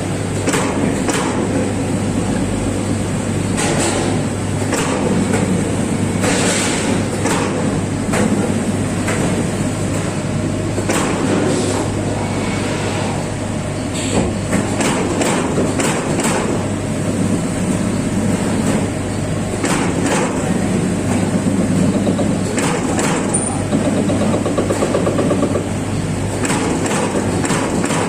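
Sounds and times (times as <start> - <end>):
machine hum: 0.0 - 28.0
sharp punching strikes on metal: 0.4 - 1.5, 4.7 - 5.2, 7.2 - 7.7, 19.6 - 20.4.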